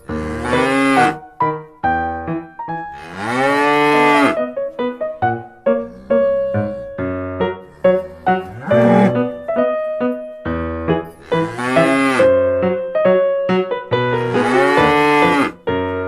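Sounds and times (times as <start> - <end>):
cow mooing: 0.0 - 1.2, 2.9 - 4.4, 5.8 - 7.0, 7.6 - 9.4, 11.2 - 12.4, 14.2 - 15.6
bouncy piano music: 0.0 - 16.0.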